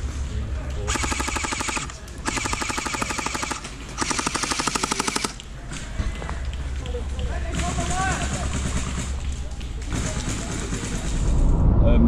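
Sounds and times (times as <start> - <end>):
airsoft gun firing full auto: 0.9 - 5.4.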